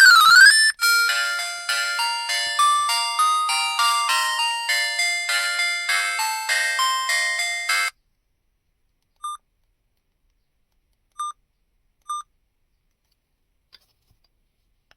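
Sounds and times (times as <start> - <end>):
chiming ringtone melody: 0.0 - 7.9.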